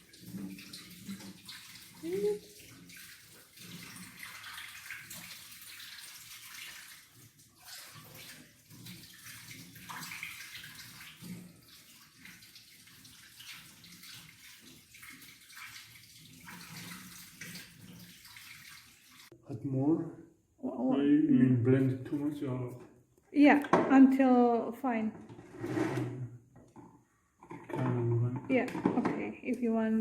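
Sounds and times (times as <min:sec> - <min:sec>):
tap water splashing: 0:00.0 - 0:19.4, 0:26.6 - 0:29.2.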